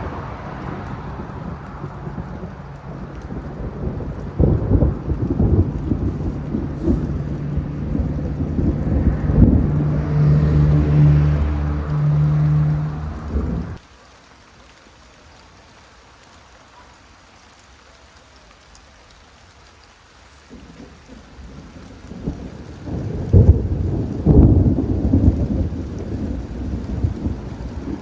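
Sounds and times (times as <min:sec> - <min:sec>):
thunder rumbling: 0:00.0 - 0:13.8, 0:20.5 - 0:28.0
rain hiss: 0:00.0 - 0:28.0.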